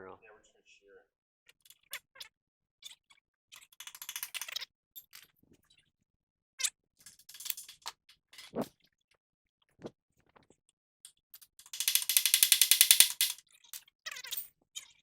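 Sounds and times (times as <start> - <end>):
hand tools clicking and clanking: 11.7 - 13.4
rapid ratchet clicks: 11.8 - 13.4.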